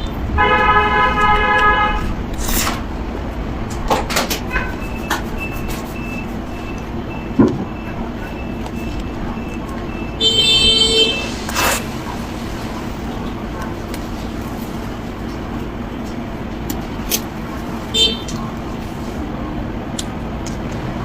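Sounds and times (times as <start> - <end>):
low rumble of traffic: 0.0 - 21.0
horn blast: 0.4 - 2.1.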